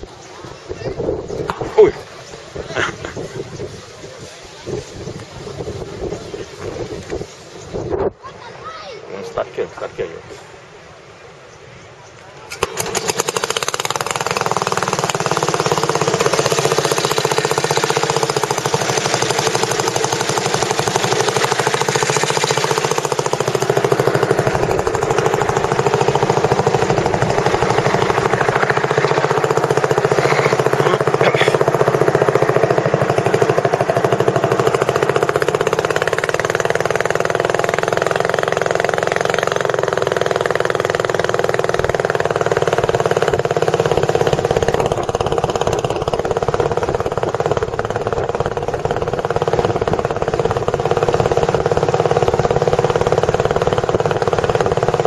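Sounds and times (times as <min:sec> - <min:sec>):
boat engine knocking steadily: 0:12.7 - 0:55.0.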